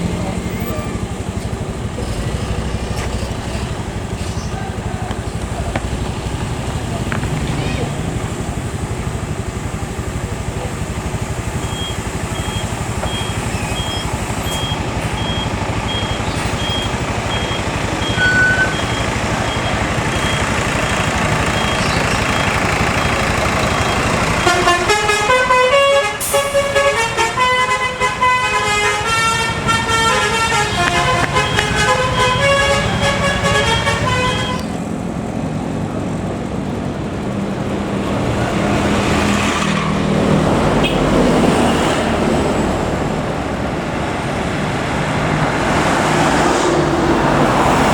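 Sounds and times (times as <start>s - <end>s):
bus engine and road noise: 0.0s - 47.9s
multi-tone horn tune: 24.0s - 34.8s, 40.8s - 41.9s.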